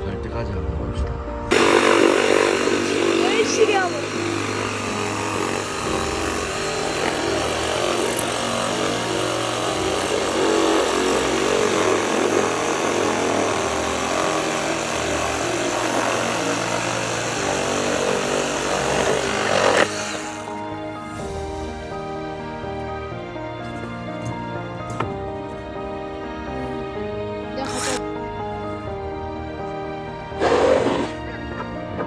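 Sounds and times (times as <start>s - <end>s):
electric saw cutting wood: 1.3s - 32.0s.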